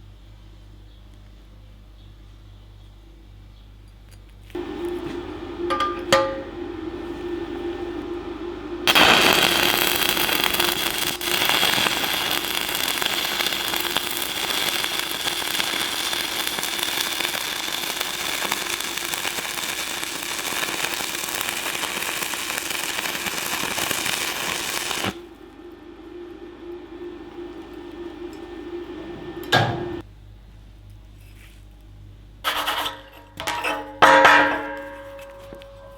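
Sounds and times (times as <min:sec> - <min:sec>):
low hum: 0:04.6 - 0:31.2, 0:33.8 - 0:35.9
welding arc crackling and hissing: 0:08.8 - 0:25.4.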